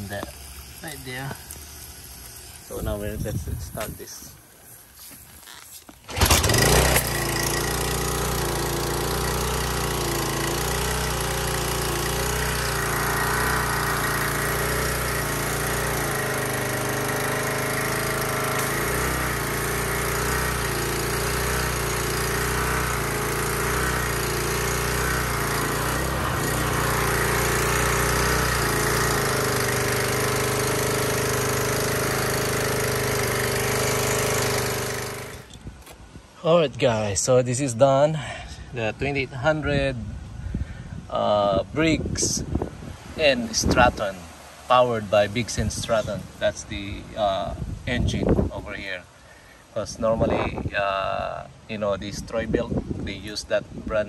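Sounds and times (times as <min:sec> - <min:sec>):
pressure washer engine running: 0:00.0 - 0:05.0, 0:06.0 - 0:35.6.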